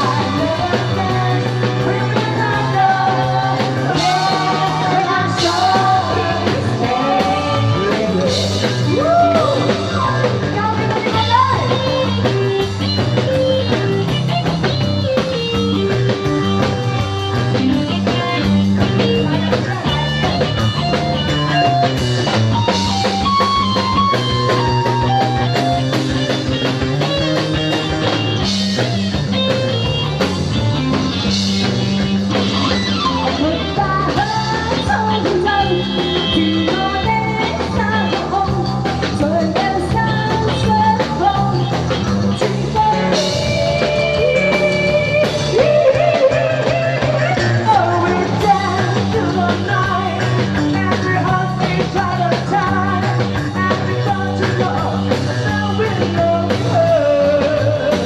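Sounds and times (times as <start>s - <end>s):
person singing: 0.0s - 14.5s, 32.4s - 58.0s
drum kit: 0.0s - 58.0s
electric guitar: 0.0s - 58.0s.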